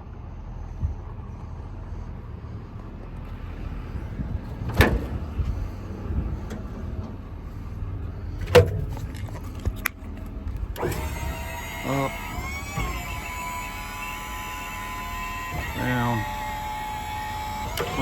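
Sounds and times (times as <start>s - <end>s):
steady low rumble: 0.0s - 14.4s
sharp clunks: 4.6s - 5.6s, 8.4s - 10.0s.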